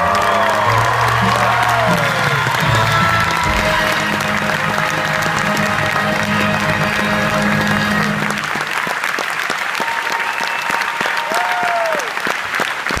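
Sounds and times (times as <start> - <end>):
orchestra holding final chord: 0.0 - 8.9
audience applauding: 0.0 - 13.0.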